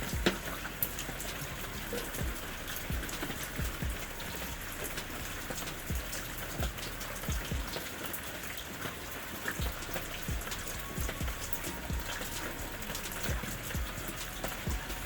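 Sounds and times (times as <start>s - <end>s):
low thuds: 0.0s - 7.8s, 9.6s - 15.0s
steady rain falling: 0.0s - 15.0s.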